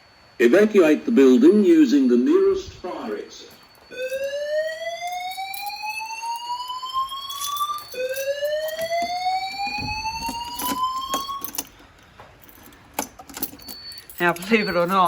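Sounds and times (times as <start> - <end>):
fire alarm whoop tone: 1.2 - 11.7.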